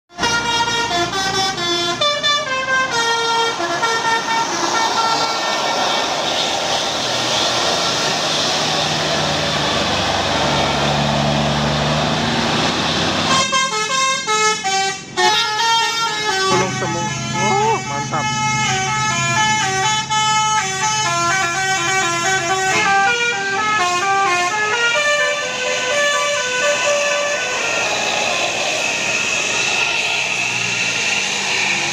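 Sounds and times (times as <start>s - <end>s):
musical air horns playing tune: 0.1s - 8.5s, 13.2s - 31.6s
steady rushing noise: 3.3s - 13.0s, 26.4s - 31.9s.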